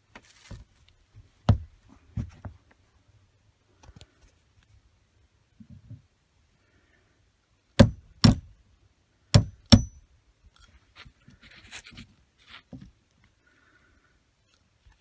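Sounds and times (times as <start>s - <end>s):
water pipes knocking: 7.8s - 8.4s, 9.4s - 10.0s.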